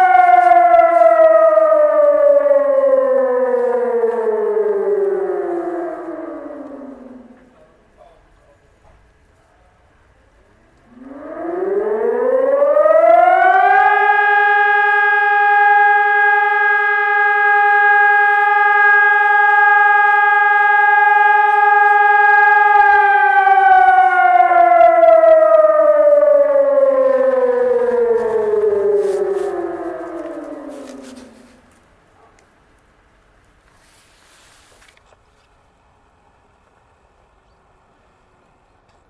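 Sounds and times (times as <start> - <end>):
civil defence siren winding: 0.0 - 7.8, 10.6 - 31.9.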